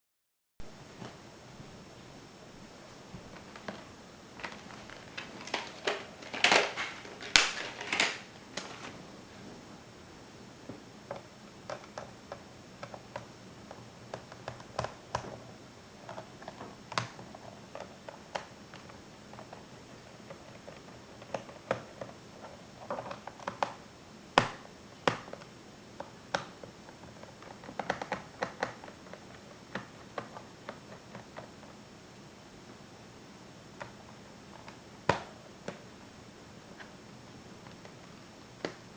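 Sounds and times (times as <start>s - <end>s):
tools clicking on laptop parts: 24.4s - 31.5s.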